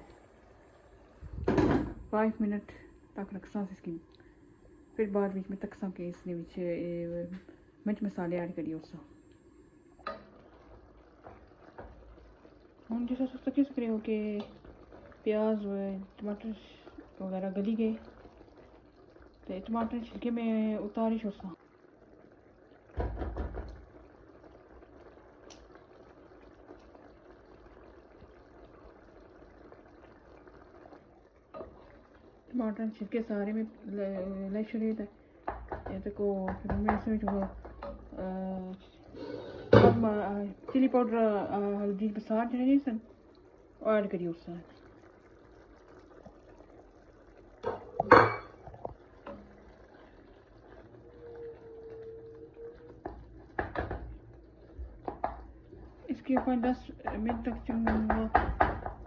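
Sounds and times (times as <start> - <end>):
faint steady tone: 0.0 - 21.6
curry bubbling in a pan: 0.0 - 59.0
dull thump: 1.3 - 2.0.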